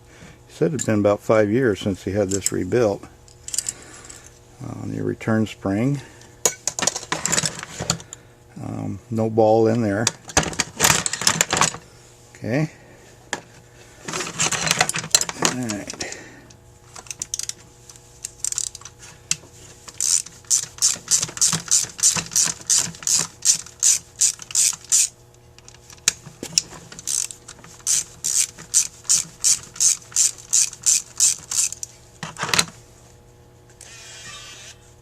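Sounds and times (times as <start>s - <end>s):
ratcheting hand tool clicking: 17.0s - 17.6s, 18.2s - 18.9s, 19.9s - 31.9s.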